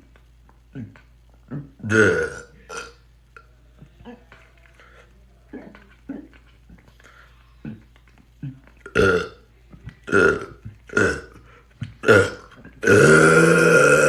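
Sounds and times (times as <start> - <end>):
man burping: 0.7 - 3.0, 8.4 - 9.4, 10.1 - 11.4, 12.0 - 14.0.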